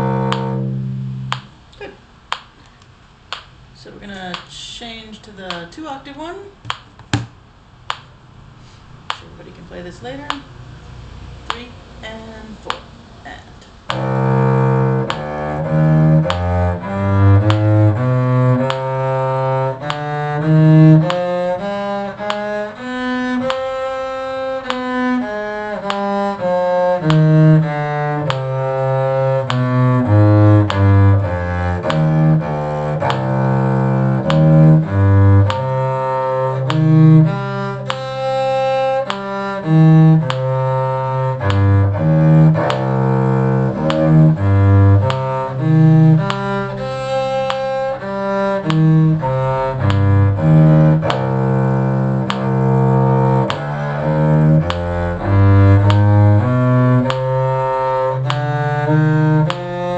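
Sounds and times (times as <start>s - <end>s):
bowed strings playing a scale: 0.0s - 1.6s, 13.9s - 59.9s.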